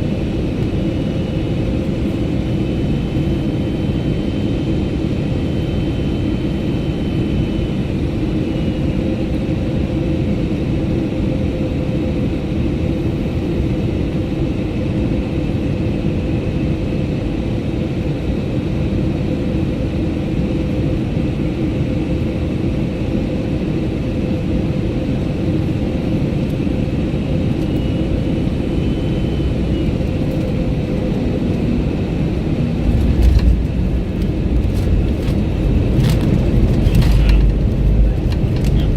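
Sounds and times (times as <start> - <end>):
airplane cabin rumble: 0.0 - 38.9
heavy low thuds: 32.8 - 38.1.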